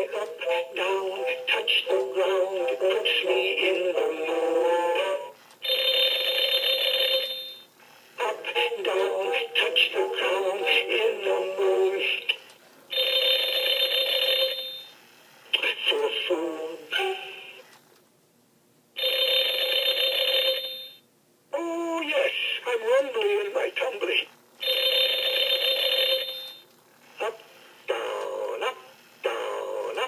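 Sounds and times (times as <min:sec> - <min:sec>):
alarm clock toy melody: 0:05.6 - 0:07.6, 0:12.9 - 0:14.9, 0:19.0 - 0:21.0, 0:24.6 - 0:26.6.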